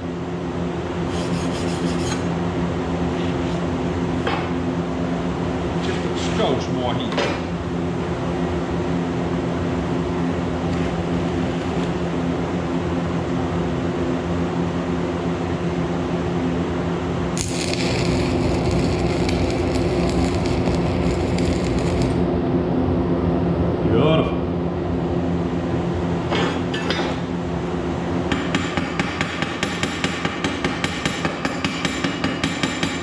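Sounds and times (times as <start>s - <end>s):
welder humming: 1.0s - 2.3s, 17.3s - 22.3s
welding arc crackling and hissing: 17.4s - 22.3s.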